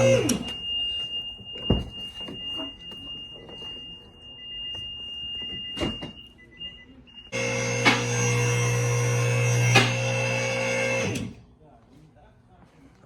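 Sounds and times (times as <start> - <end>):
electric motor humming: 0.0 - 0.3, 7.4 - 11.4.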